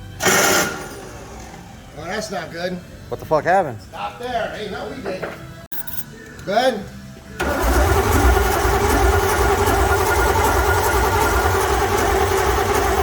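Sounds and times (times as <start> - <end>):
engine cranking on starter: 0.2 - 1.7, 7.4 - 13.0.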